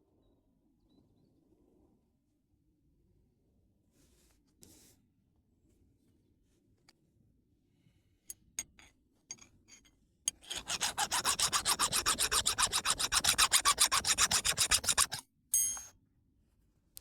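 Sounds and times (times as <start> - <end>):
file rasping on stone: 10.3 - 15.2.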